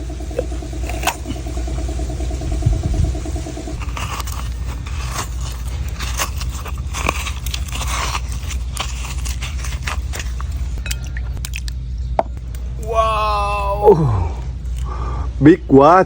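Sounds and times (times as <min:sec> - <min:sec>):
steady low hum: 0:00.0 - 0:16.0
knife cutting and scraping coconut: 0:03.8 - 0:11.7.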